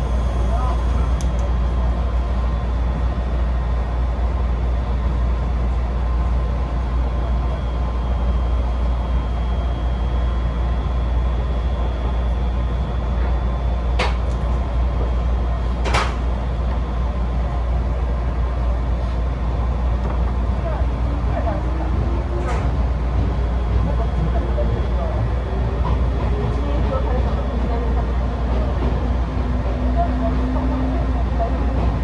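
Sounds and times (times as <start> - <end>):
train rumbling: 0.0 - 32.0.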